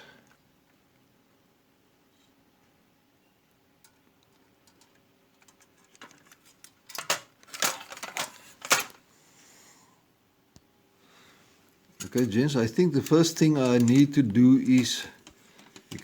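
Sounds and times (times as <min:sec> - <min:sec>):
thin metal clattering rattle: 0:04.6 - 0:09.0, 0:12.0 - 0:16.0.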